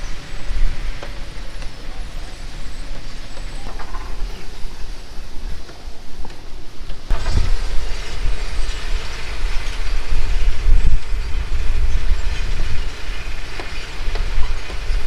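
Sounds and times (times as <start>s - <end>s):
machine rumbling and rattling: 5.7s - 15.0s.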